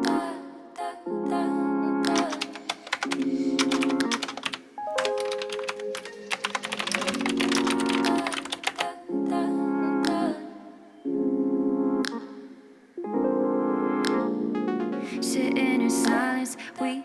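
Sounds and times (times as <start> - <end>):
mechanical keyboard typing: 2.1 - 8.9
soft electric piano music: 2.1 - 10.3, 11.0 - 16.6.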